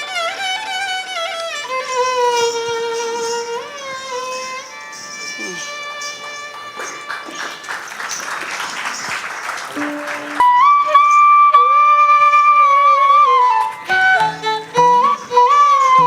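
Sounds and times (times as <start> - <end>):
flute playing: 9.8 - 16.0.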